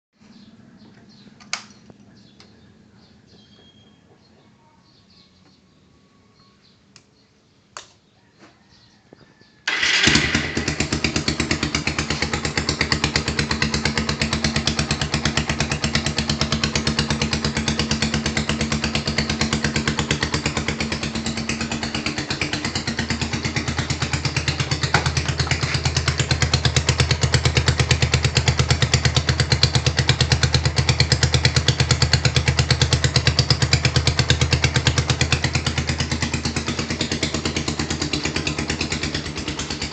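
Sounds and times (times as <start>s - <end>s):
motorcycle engine idling: 9.7s - 39.9s.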